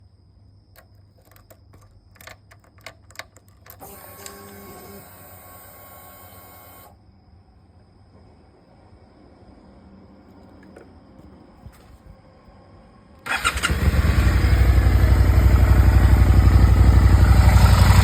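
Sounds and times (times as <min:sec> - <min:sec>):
fuel pump whine: 0:13.2 - 0:18.0.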